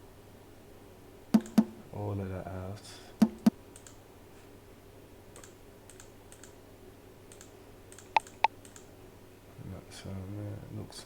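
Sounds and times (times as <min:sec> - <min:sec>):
faint computer clicks: 0:01.4 - 0:01.8, 0:03.2 - 0:04.0, 0:05.3 - 0:06.6, 0:07.3 - 0:08.9
percussion sample hits: 0:01.4 - 0:01.8, 0:03.2 - 0:03.5.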